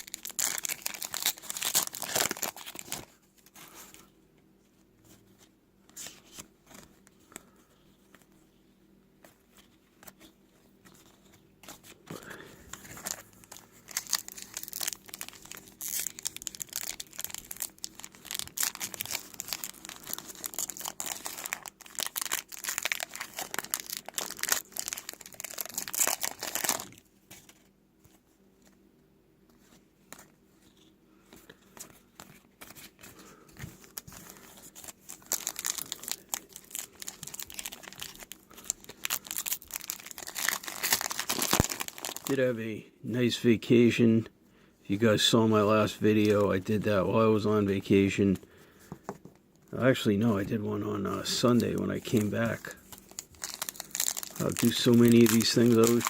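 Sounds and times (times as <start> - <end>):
wrappers tearing and crinkling: 0.0 - 4.0, 12.1 - 27.6, 32.6 - 42.4, 50.3 - 56.0
cards rustling: 0.0 - 4.1, 5.0 - 8.6, 9.2 - 28.8, 29.5 - 42.4, 44.9 - 56.0.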